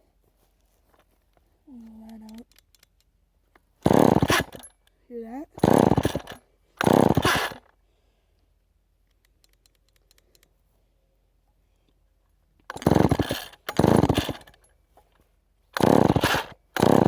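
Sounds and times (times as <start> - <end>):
chainsaw recoil cord pulls: 2.0 - 4.9, 5.6 - 7.8, 12.6 - 14.7, 15.7 - 17.0.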